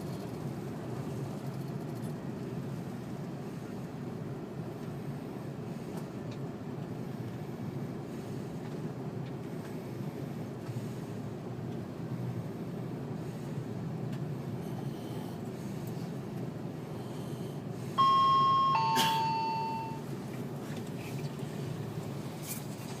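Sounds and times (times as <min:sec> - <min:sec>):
moving train rumble: 0:00.0 - 0:23.0
two-tone train chime: 0:18.0 - 0:20.2.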